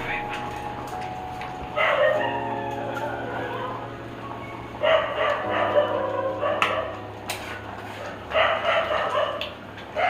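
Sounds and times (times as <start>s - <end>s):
dog barking: 1.8s - 2.4s, 4.8s - 7.0s, 8.3s - 10.0s.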